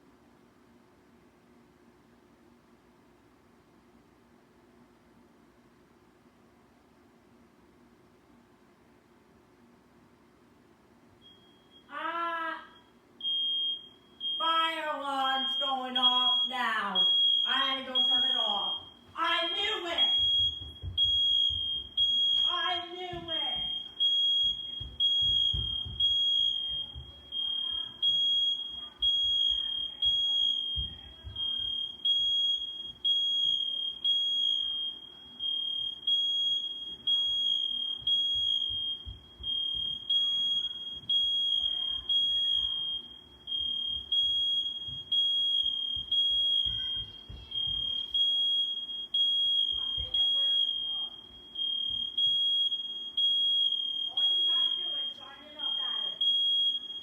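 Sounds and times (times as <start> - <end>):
smoke alarm beeping: 11.2 - 11.9, 12.6 - 57.0.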